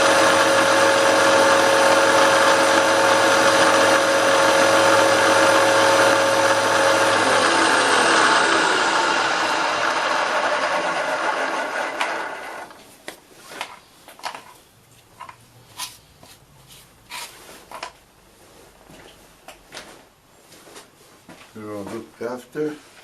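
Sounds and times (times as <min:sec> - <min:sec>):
machine tool motor running: 0:00.0 - 0:12.7.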